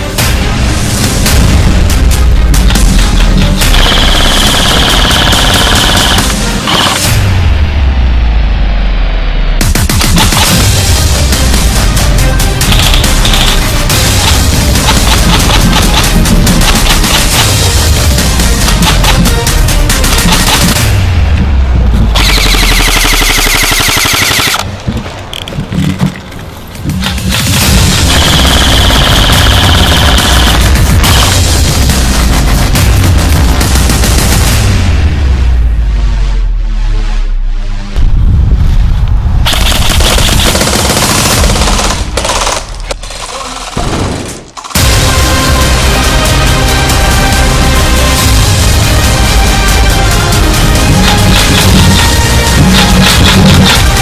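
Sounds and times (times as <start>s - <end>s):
background music with bass: 0.0s - 22.7s, 26.8s - 39.4s, 44.8s - 54.0s
rapid automatic gunfire: 2.6s - 7.2s, 9.6s - 11.7s, 12.4s - 20.8s, 22.2s - 24.6s, 27.3s - 34.6s, 39.5s - 44.9s, 50.5s - 54.0s
airsoft rifles firing bursts: 2.8s - 7.1s, 12.6s - 20.8s, 22.2s - 24.7s, 27.3s - 32.5s, 39.5s - 42.8s, 50.7s - 54.0s.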